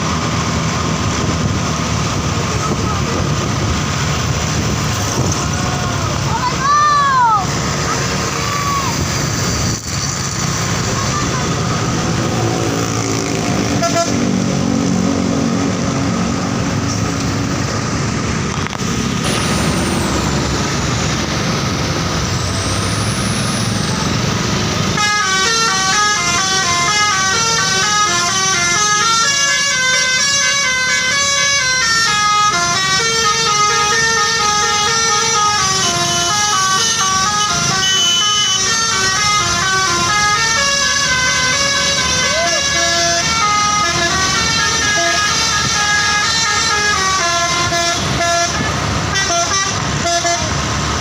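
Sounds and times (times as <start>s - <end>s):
musical air horns melody: 13.6s - 14.8s, 24.9s - 50.6s.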